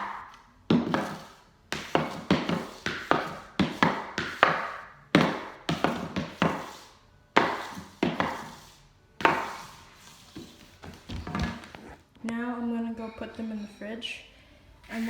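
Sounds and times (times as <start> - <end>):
hockey puck knocking and scraping: 0.0 - 11.9.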